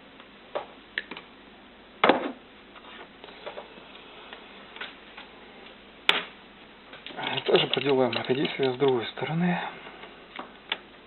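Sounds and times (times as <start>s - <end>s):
tools clicking on workbench: 7.0s - 9.0s.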